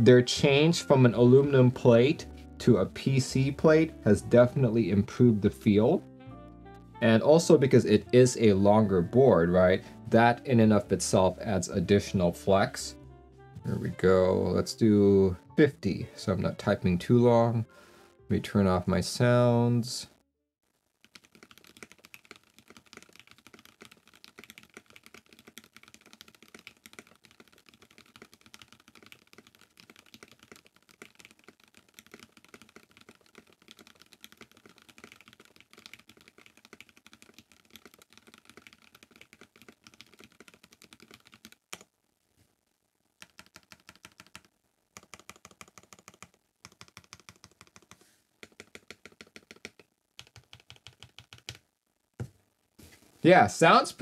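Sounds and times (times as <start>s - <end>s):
typing on mechanical keyboard: 21.0s - 41.9s, 43.2s - 51.6s.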